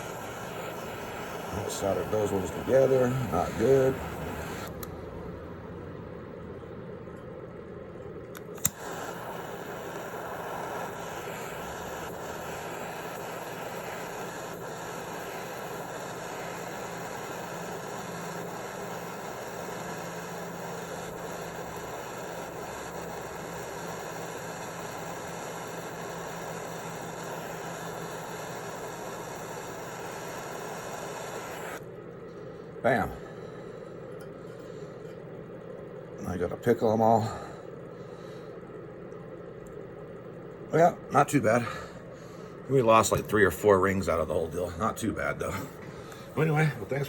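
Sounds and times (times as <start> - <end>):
torch flame hissing: 0.0 - 4.9, 8.3 - 31.9, 40.7 - 47.0
torch igniter click: 8.3 - 31.8.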